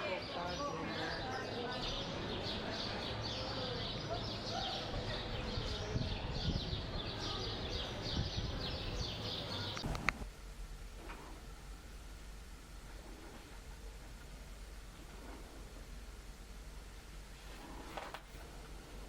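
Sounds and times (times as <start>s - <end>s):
murmur of voices: 0.0s - 10.0s
birds chirping: 0.0s - 10.2s.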